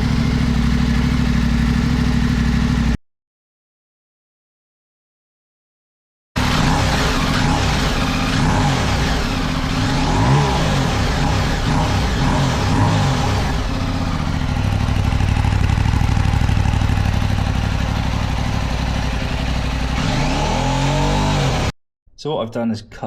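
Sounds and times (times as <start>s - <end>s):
motorcycle engine revving and idling: 0.0s - 3.0s, 6.4s - 21.8s.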